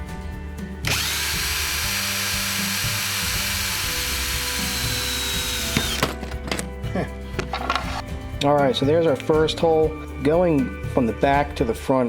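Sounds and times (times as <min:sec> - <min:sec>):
power drill whining through metal: 0:00.8 - 0:06.2.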